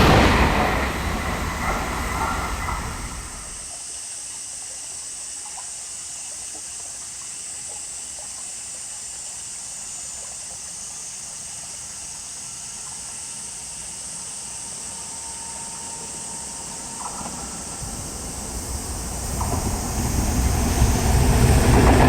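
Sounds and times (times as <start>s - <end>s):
train rumble: 0.0s - 3.7s, 15.5s - 22.0s
outdoor ambience hiss: 0.0s - 22.0s.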